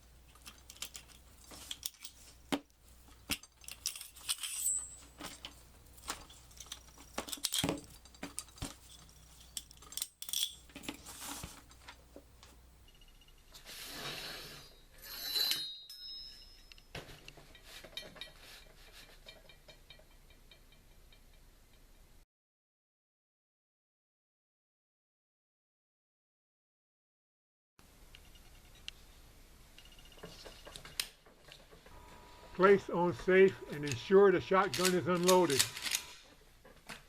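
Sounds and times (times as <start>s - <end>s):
shotgun parts clicking and clinking: 0.1s - 12.0s, 33.7s - 37.0s
metal sliding and scraping: 0.2s - 11.8s, 13.6s - 15.8s, 34.7s - 36.4s.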